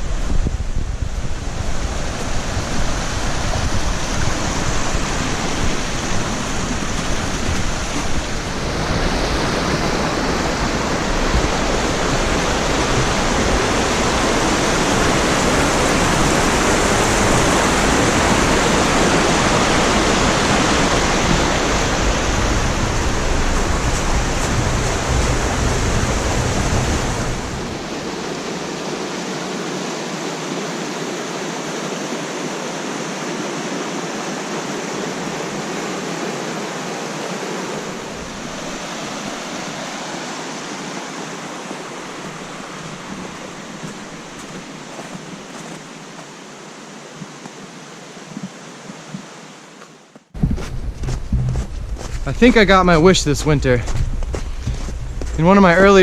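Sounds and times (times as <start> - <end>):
stream water rushing: 0.0 - 56.0
low rumble: 50.4 - 56.0.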